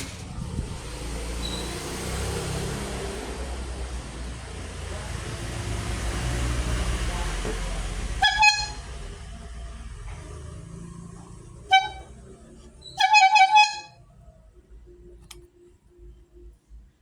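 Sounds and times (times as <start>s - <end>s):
vendor's horn tooting: 6.7s - 14.3s.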